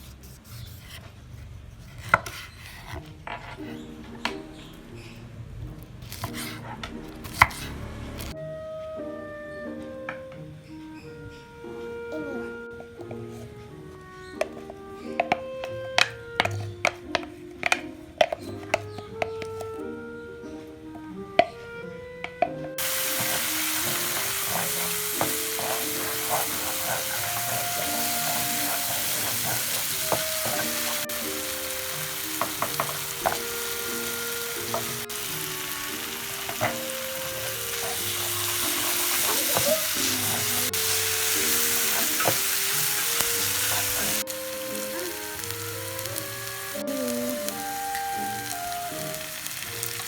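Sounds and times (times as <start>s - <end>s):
food sizzling in hot oil: 22.8s - 50.0s.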